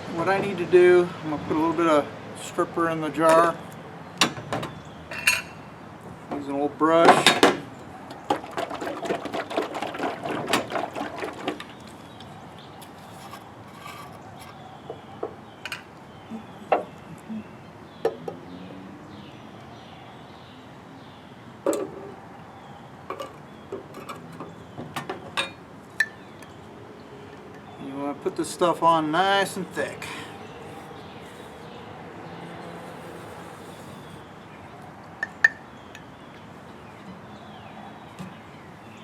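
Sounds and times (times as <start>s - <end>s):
jar and brush clatter: 5.1s - 5.6s, 7.0s - 12.2s, 12.8s - 14.6s.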